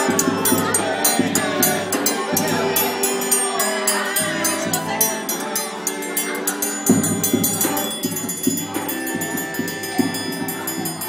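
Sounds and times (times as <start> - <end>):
accordion chords: 0.0 - 11.0
triangle struck in quick rhythm: 0.0 - 11.0
voices singing: 0.0 - 11.0.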